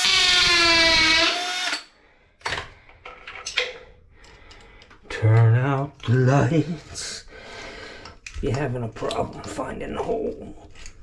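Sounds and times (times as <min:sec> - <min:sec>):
power drill whining: 0:00.0 - 0:01.9.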